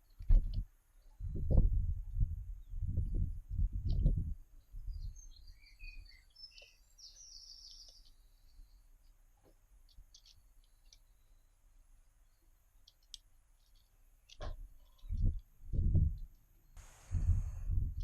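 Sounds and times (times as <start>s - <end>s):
small bird chirping and trilling: 4.9s - 8.8s
low rumble: 16.8s - 18.0s.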